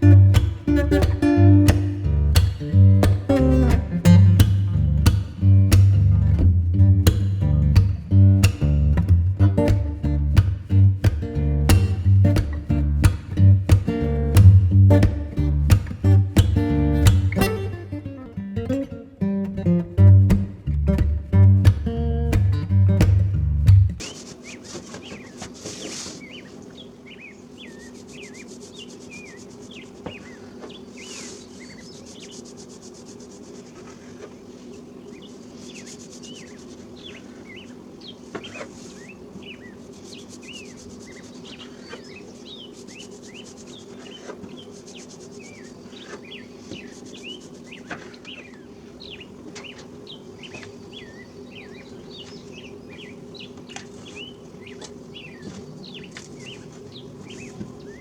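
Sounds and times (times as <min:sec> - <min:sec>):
low steady hum: 0:00.0 - 0:58.0
hands rubbing dough: 0:24.0 - 0:26.6, 0:27.9 - 0:34.7
small birds chirping: 0:24.0 - 0:58.0.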